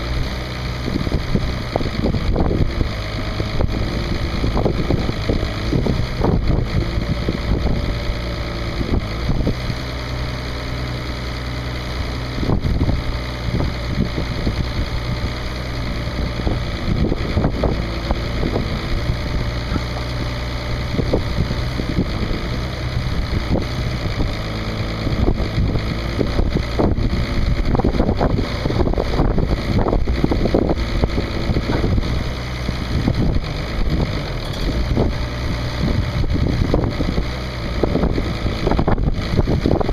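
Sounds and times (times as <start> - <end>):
diesel engine running: 0.0 - 39.9
knocks and clunks: 34.4 - 35.2.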